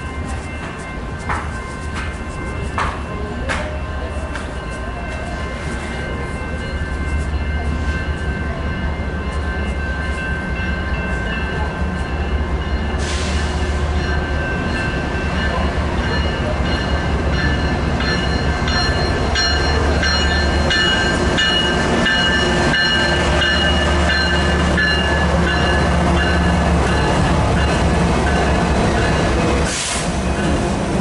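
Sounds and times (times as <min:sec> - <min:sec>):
train rumbling by: 0:00.0 - 0:31.0.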